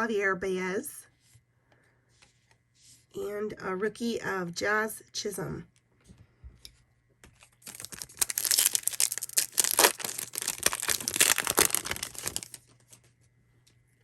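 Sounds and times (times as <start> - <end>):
foil wrapper tearing and crinkling: 7.4 - 12.8.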